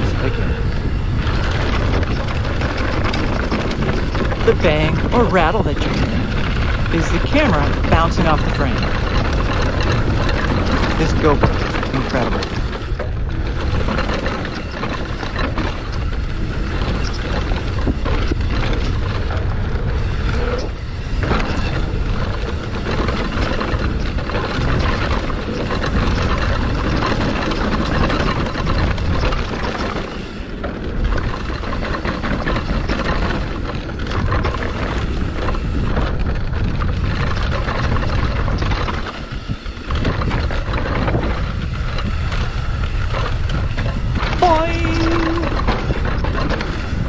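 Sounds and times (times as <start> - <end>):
bike rattling over rocks: 0.0 - 47.0.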